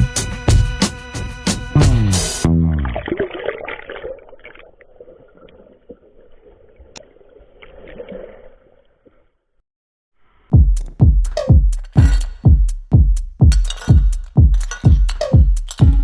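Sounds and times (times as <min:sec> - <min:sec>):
water running and splashing: 0:02.9 - 0:09.0.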